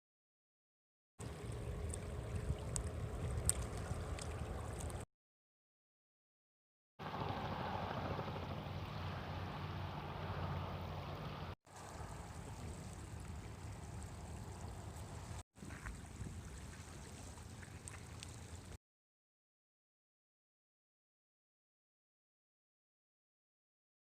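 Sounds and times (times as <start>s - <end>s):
water rushing and splashing: 1.2s - 5.0s, 8.6s - 18.8s.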